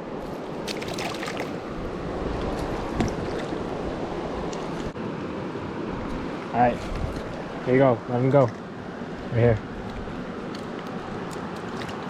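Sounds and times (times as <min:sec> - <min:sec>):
river water rushing: 0:00.0 - 0:07.7, 0:10.1 - 0:12.0.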